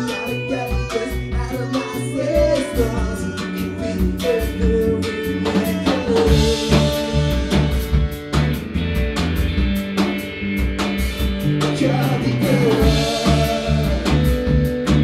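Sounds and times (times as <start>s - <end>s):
person singing: 0.0s - 8.1s, 11.6s - 15.0s
amplified instruments: 0.0s - 15.0s
drum kit steady beat: 0.0s - 15.0s.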